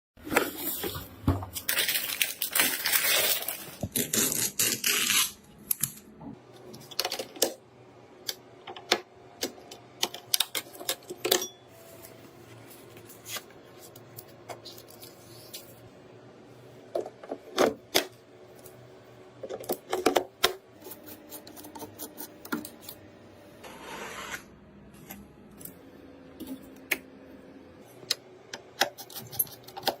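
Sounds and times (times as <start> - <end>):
computer parts clicking and clattering: 28.8 - 30.0.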